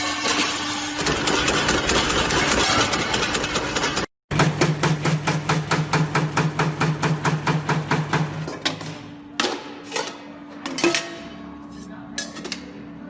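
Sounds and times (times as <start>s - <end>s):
steady machine hum: 9.1s - 13.0s.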